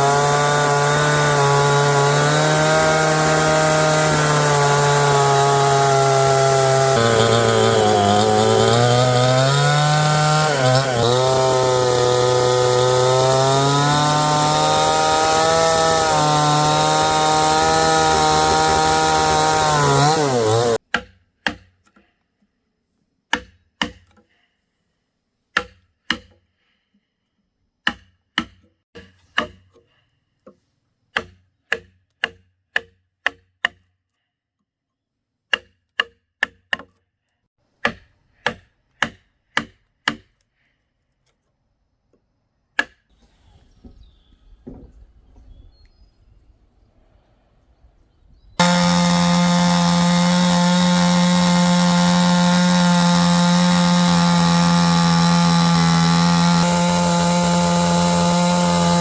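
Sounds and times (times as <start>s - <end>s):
chainsaw cutting wood: 0.0s - 20.8s, 48.6s - 59.0s.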